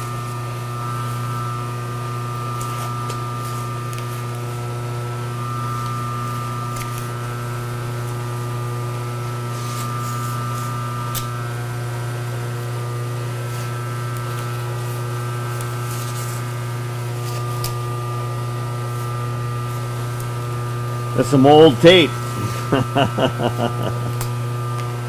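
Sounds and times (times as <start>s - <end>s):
lathe humming: 0.0s - 25.0s
steady tones: 6.1s - 11.6s, 17.2s - 24.2s.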